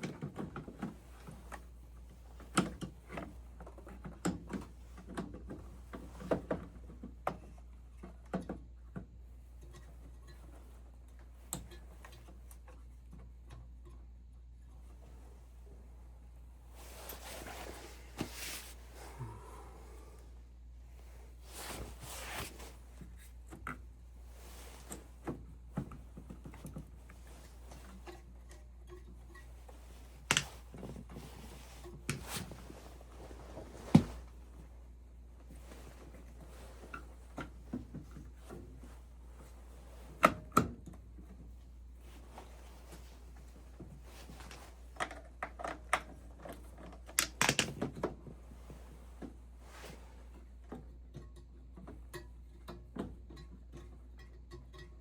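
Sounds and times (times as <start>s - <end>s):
faint low hum: 7.0s - 55.0s
tools clicking and knocking: 30.3s - 30.6s, 44.5s - 48.1s.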